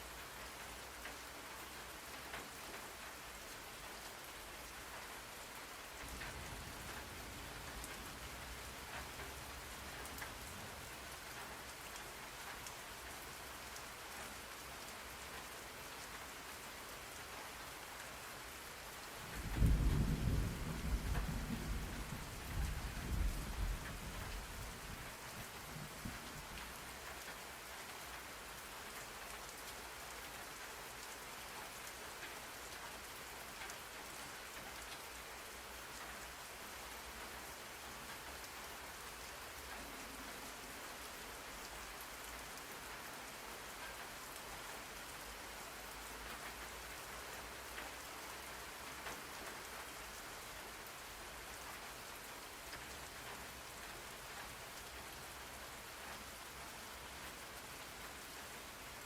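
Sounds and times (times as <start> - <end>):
steady rain falling: 0.0 - 59.0
thunder rolling: 19.3 - 24.2.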